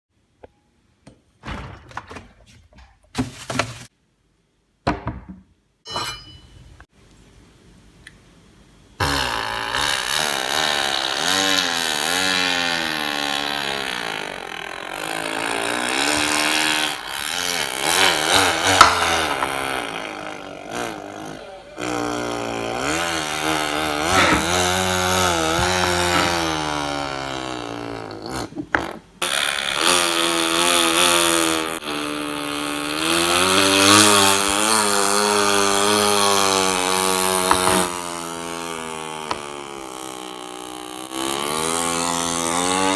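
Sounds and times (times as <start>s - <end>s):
person imitating a chainsaw: 9.0s - 42.9s.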